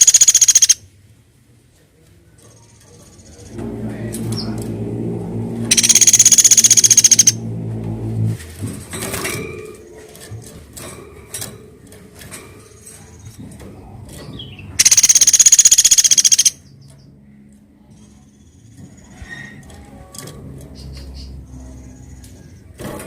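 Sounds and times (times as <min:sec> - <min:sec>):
woodpecker rattling trill: 0:00.0 - 0:00.8, 0:02.5 - 0:07.7, 0:14.3 - 0:17.1
low steady hum: 0:02.8 - 0:22.8.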